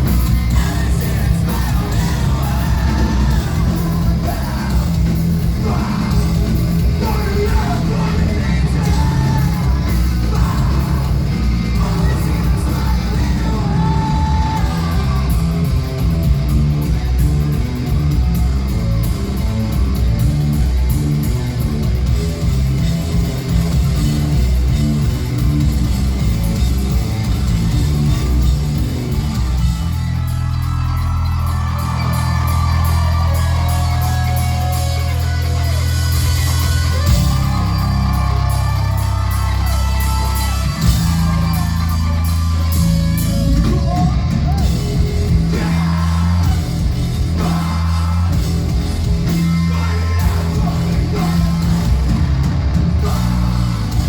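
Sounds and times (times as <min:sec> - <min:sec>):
live rock band playing: 0:00.0 - 0:54.0
person singing: 0:00.2 - 0:15.9.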